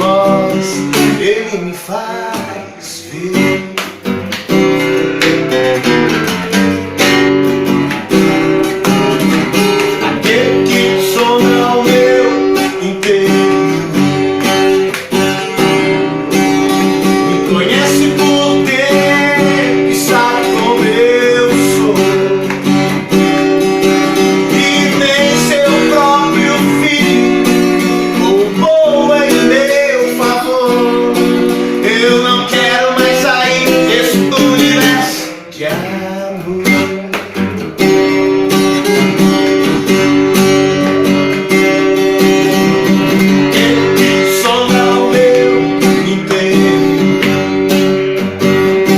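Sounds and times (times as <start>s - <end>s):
person singing: 0.0s - 4.0s, 10.0s - 16.2s, 17.0s - 23.1s, 24.0s - 37.4s, 43.5s - 47.4s
acoustic guitar strumming: 0.0s - 48.9s.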